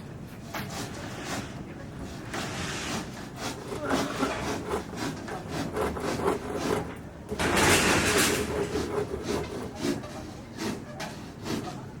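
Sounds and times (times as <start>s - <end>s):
knocks and scrapes: 0.5s - 11.9s
loud rasping: 2.3s - 11.9s.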